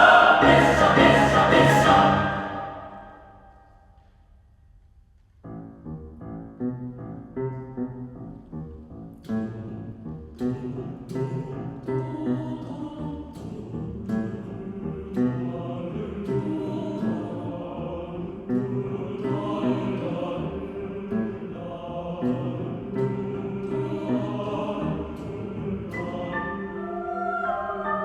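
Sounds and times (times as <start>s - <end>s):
piano accompaniment: 0.0s - 3.2s
mixed choir singing: 0.0s - 3.5s, 12.7s - 28.0s.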